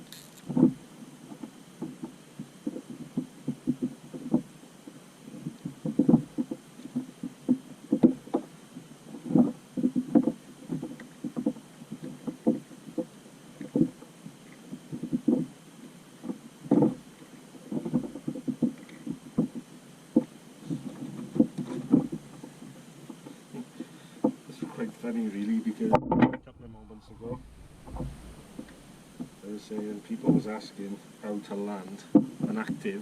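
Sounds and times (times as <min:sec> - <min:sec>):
knocks and slaps on inflatable boat: 0:05.7 - 0:08.5, 0:09.3 - 0:14.0.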